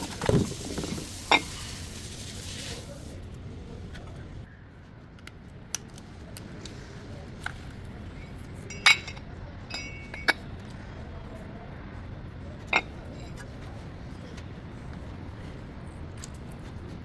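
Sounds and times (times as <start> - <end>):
metal tools clinking: 8.7 - 10.5.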